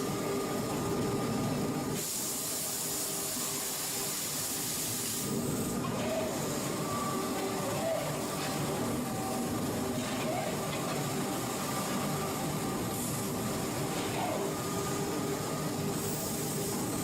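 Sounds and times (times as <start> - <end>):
factory machinery humming: 0.0 - 17.0
pressure release hiss: 2.0 - 5.5.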